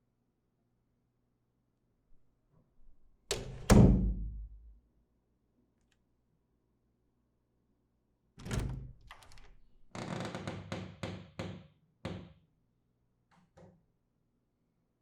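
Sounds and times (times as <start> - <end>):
door opening and closing: 3.3 - 4.5, 8.4 - 10.5.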